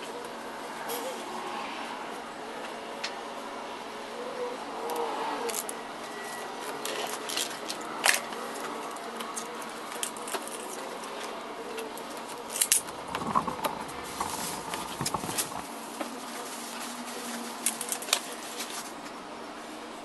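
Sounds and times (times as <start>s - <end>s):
small clicks and scratches on plastic: 12.7s - 15.7s.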